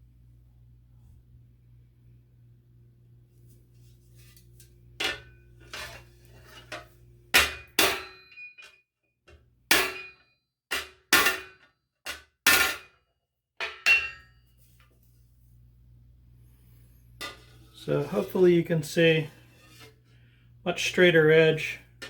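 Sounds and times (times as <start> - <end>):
hammer striking steel plate: 7.3 - 8.5, 9.7 - 12.9.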